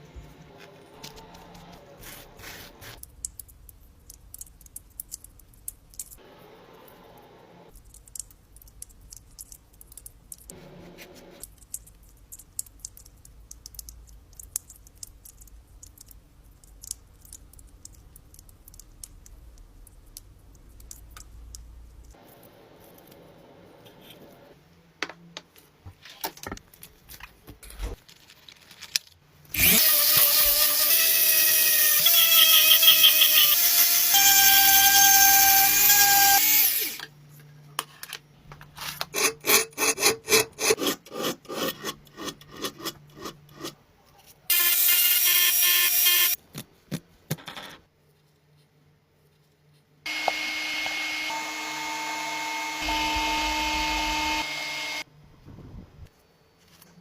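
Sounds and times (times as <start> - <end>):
power tool whining: 29.6 - 37.0, 50.1 - 55.0.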